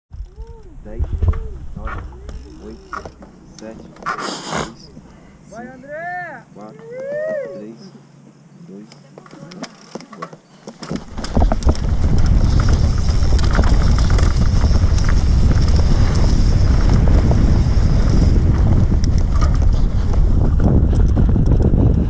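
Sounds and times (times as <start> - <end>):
wind buffeting microphone: 0.1 - 4.1, 10.7 - 22.0
bike clicks and rattles: 0.1 - 4.2, 9.0 - 22.0.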